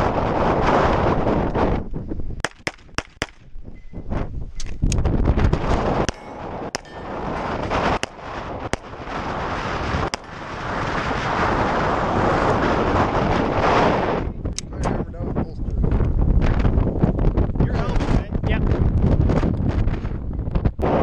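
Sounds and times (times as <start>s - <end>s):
wind buffeting microphone: 0.0s - 21.0s
handgun shots: 2.4s - 3.5s, 6.0s - 7.0s.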